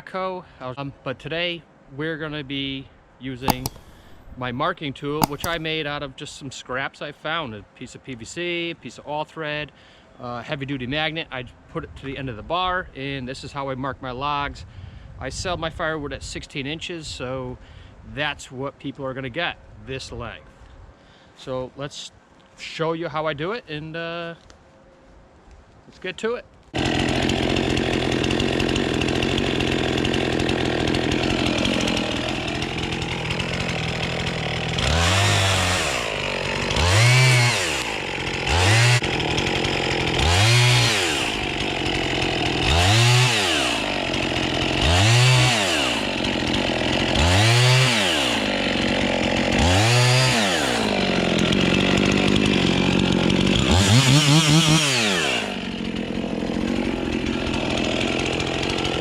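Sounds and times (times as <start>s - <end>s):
chainsaw engine revving: 3.4s - 5.7s, 26.8s - 59.0s.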